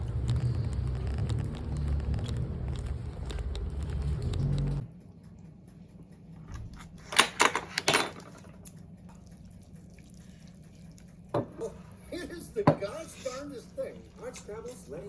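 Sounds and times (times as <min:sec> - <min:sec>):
low rumbling noise: 0:00.0 - 0:04.9.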